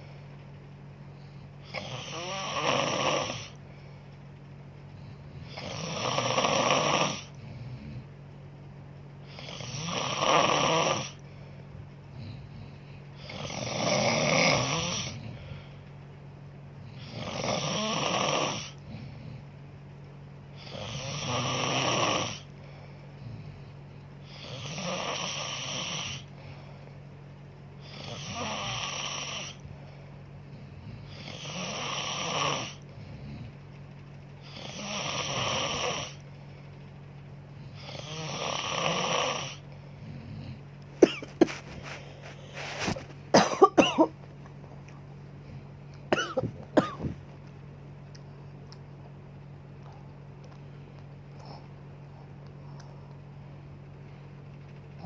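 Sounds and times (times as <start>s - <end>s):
woman snoring: 1.6s - 3.6s, 5.2s - 8.1s, 9.2s - 11.2s, 12.2s - 15.6s, 16.8s - 19.4s, 20.5s - 22.5s, 24.2s - 26.3s, 27.8s - 29.6s, 30.7s - 33.5s, 34.4s - 36.2s, 37.7s - 41.6s.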